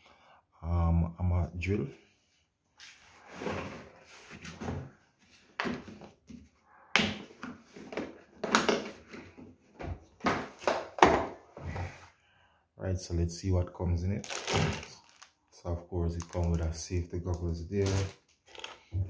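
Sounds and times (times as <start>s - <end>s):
packaging scraping and rustling: 14.2s - 15.3s.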